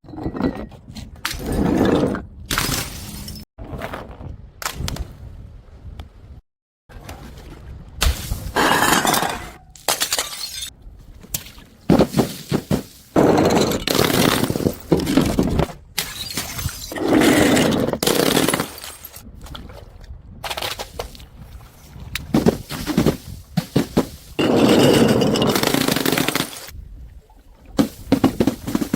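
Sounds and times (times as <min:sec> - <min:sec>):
glass bottles smashing: 0:08.6 - 0:10.7, 0:16.0 - 0:17.0, 0:18.0 - 0:19.2.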